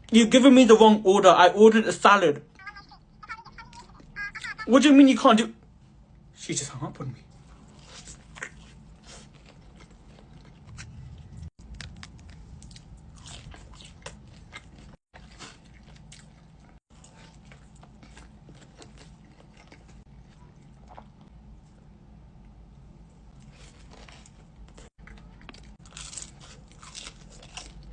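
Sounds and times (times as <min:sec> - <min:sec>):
crunchy chewing of fried food: 0:07.3 - 0:27.9.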